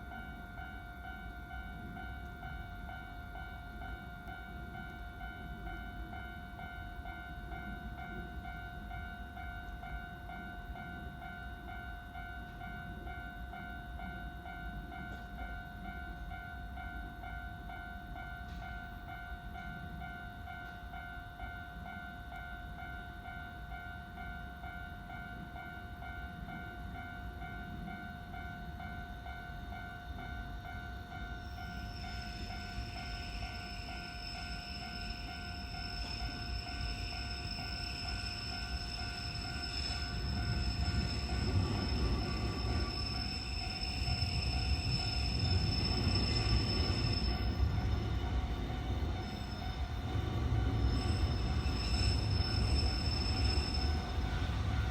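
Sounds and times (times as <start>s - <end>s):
level-crossing alarm bell: 0.0s - 54.9s
train rumbling: 24.7s - 54.9s
high-pitched squeal: 31.8s - 54.9s.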